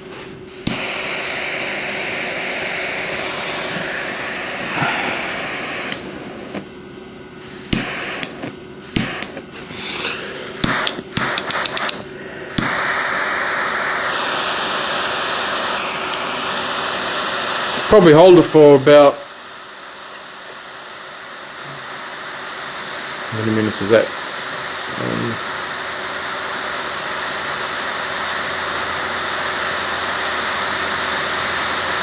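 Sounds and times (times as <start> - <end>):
torch lighter hissing: 0.0 - 6.7, 7.3 - 32.0
sharp lighter clicks: 7.7 - 9.4, 10.6 - 12.8.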